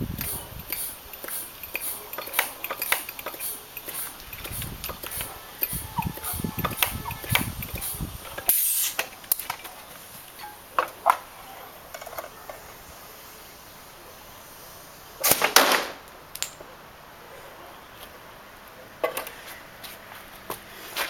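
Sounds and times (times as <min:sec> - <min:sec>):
sharp mechanical clicks: 0:00.1 - 0:09.8
brief hiss: 0:02.9 - 0:09.1.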